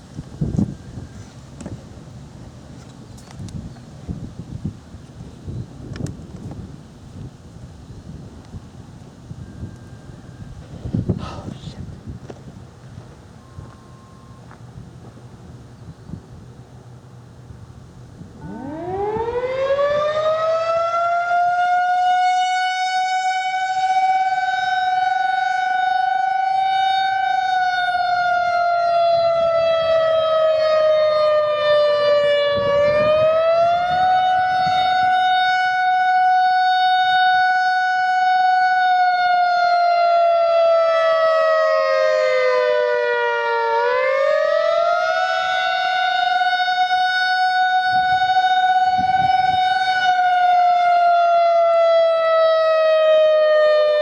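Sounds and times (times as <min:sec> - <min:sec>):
civil defense siren: 0:00.0 - 0:01.8, 0:08.0 - 0:11.6, 0:13.4 - 0:14.9, 0:18.2 - 0:54.0.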